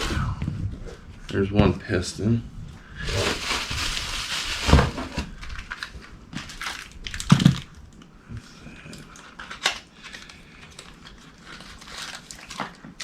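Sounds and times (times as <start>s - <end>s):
packaging rustling and crinkling: 3.0s - 7.8s, 8.9s - 13.0s
dull knocks of pieces set down: 4.6s - 5.4s.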